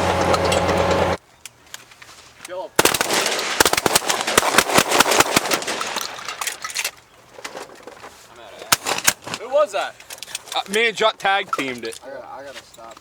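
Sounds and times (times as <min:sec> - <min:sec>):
shotgun shots: 0:02.8 - 0:06.4.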